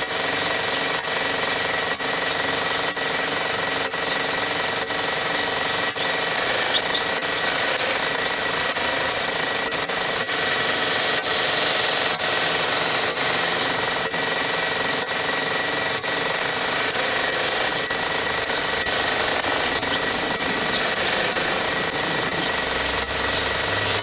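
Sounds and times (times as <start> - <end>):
belt grinder sanding wood: 0.0 - 24.0.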